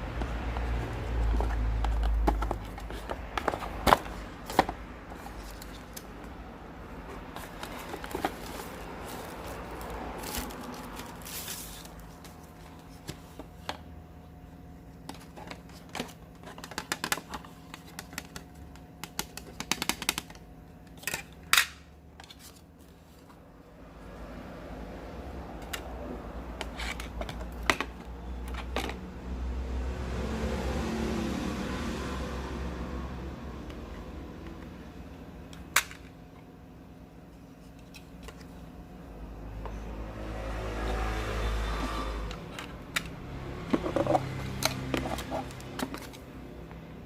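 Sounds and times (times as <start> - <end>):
packaging rustle: 7.1 - 13.1.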